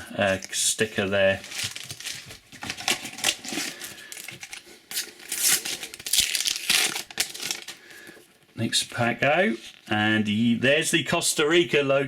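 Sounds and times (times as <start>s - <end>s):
sticker packet crinkling and tearing: 0.3s - 7.8s.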